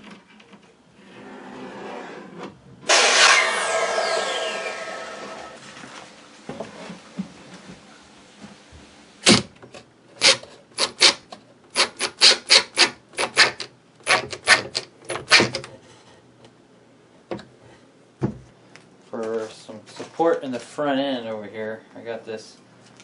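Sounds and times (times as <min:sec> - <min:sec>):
hammer driving nails into wood: 0:09.2 - 0:09.5.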